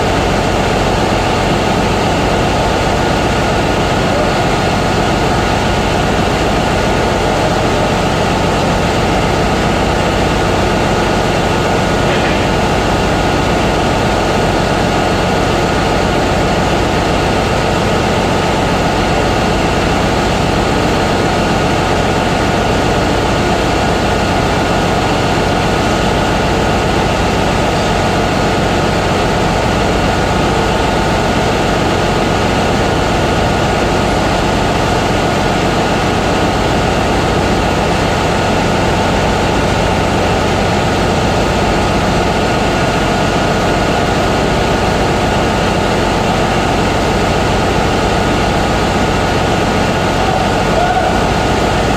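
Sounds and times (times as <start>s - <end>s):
engine room machinery drone: 0.0s - 51.9s.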